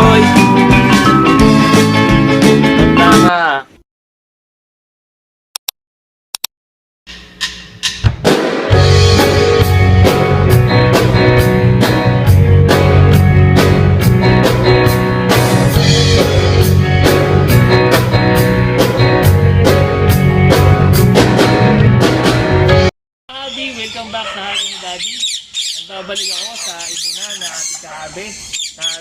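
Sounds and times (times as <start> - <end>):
drum kit beat: 0.0 - 3.3, 7.1 - 22.9
electric guitar: 8.7 - 22.9.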